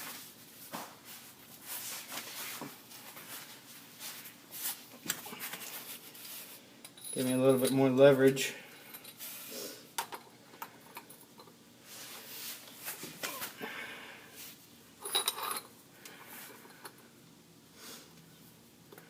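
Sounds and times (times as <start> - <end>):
tools rattling: 15.0 - 15.7.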